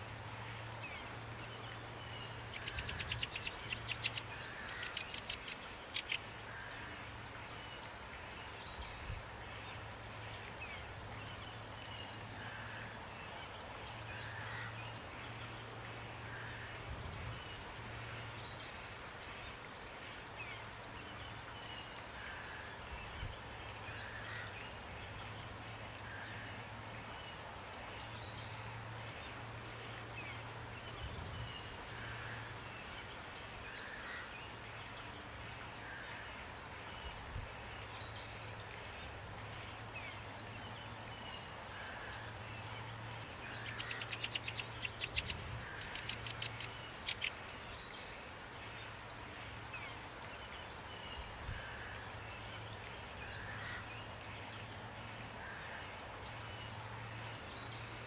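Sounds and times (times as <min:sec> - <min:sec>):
songbirds chirping and trilling: 0:00.0 - 0:58.0
steady rain: 0:00.0 - 0:58.0.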